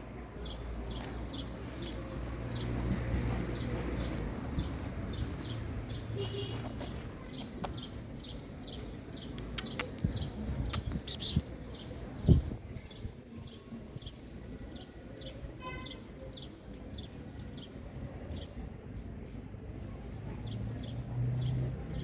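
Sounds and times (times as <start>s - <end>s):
small bird chirping: 7.3s - 11.9s
sharp clicks: 9.3s - 11.4s.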